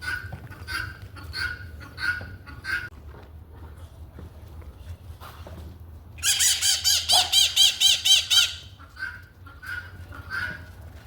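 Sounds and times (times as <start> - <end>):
bird squawking harshly: 6.2 - 8.8.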